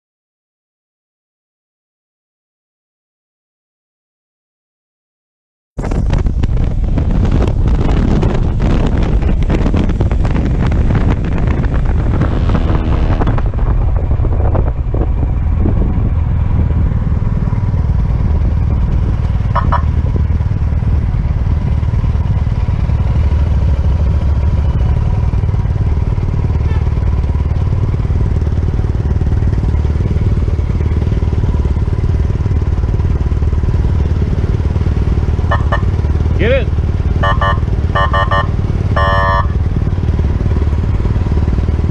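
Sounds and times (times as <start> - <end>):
wind rush on microphone: 5.8 - 35.2
motorcycle engine running: 5.8 - 41.9.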